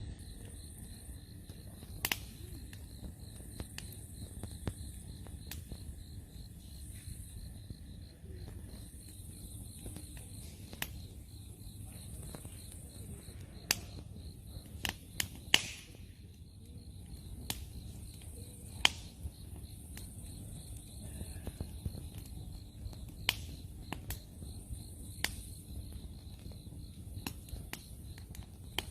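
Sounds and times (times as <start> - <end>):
campfire crackling and popping: 0.0 - 28.9
crickets chirping: 0.0 - 28.9
low rumble of fire: 0.0 - 28.9
hiss after pop: 14.8 - 16.0.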